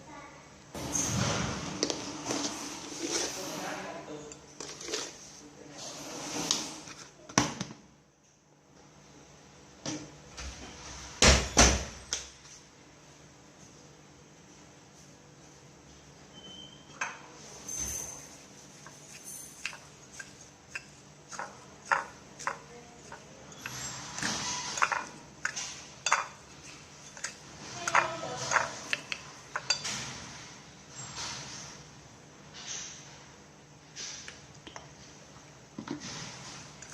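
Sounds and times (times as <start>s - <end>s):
utensils and pots clinking: 16.5s - 30.4s.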